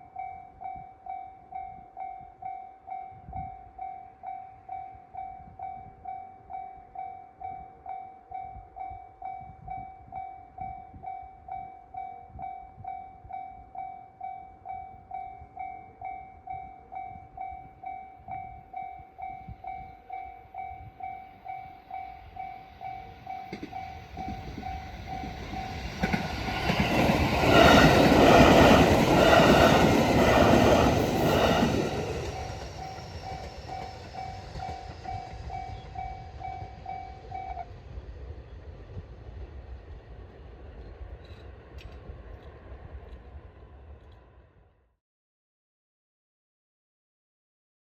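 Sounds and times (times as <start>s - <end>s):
level-crossing warning bell ringing: 0.0s - 37.7s
train rumbling with clattering wheels: 17.2s - 44.3s.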